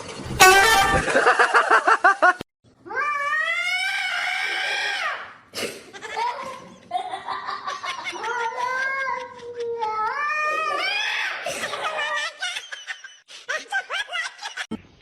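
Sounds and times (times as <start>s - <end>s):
cat yowling: 2.9s - 5.2s.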